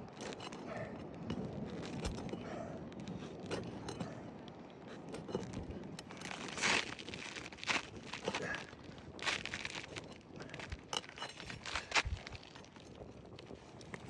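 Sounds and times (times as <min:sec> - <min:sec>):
granules grinding underfoot: 0:00.0 - 0:14.0
shoes scraping on shingle roof: 0:04.9 - 0:14.0.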